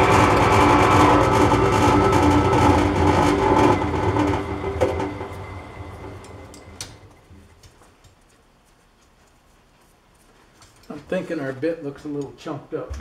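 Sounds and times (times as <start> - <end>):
metal lathe running: 0.0 - 7.1.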